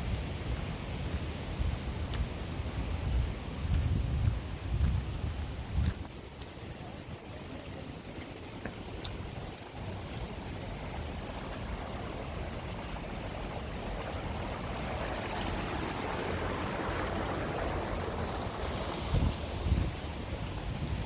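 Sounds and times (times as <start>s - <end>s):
waterfall rushing: 7.3s - 20.6s.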